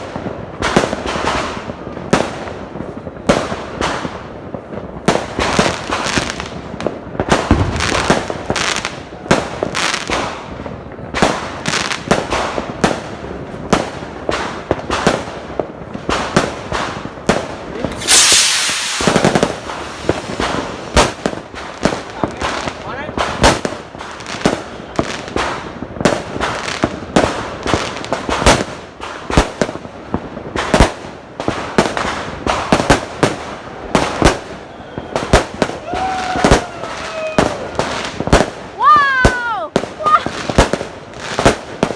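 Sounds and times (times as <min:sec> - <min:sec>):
fireworks cracking and popping: 0:00.0 - 0:41.9
firework fizzing hiss: 0:15.4 - 0:41.9.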